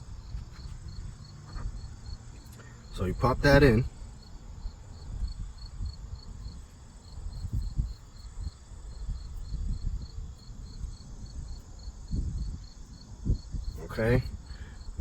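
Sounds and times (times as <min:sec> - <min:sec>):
cricket chirping: 0:00.0 - 0:15.0.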